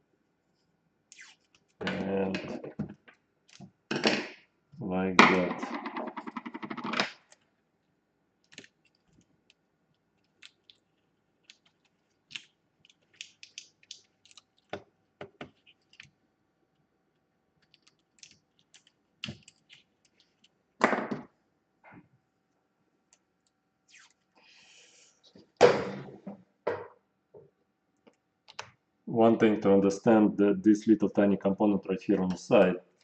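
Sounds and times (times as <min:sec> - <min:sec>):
tape clicking and crackling: 0:01.1 - 0:03.8, 0:06.1 - 0:20.6.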